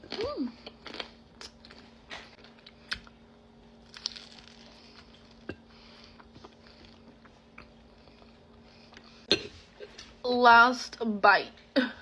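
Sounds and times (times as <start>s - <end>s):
faint steady hum: 0.0s - 12.0s
crunchy chewing: 3.8s - 9.1s.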